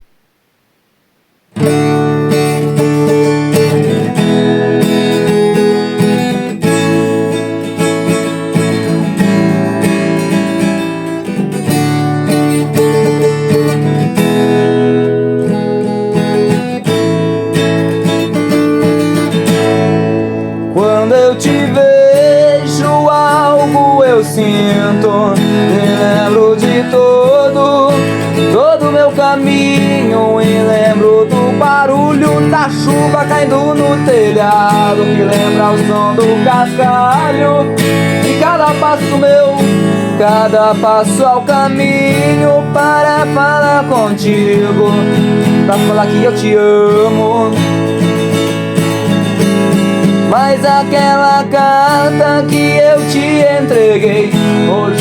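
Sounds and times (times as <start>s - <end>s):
strummed acoustic guitar: 1.5s - 55.0s
person singing: 20.7s - 48.0s, 50.1s - 55.0s.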